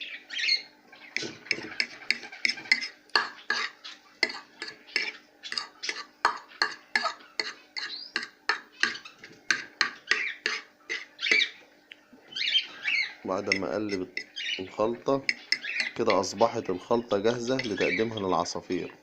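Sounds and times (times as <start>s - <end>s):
fork scraping in a bowl: 1.1s - 11.5s, 13.4s - 14.6s, 15.2s - 16.4s, 17.4s - 18.2s.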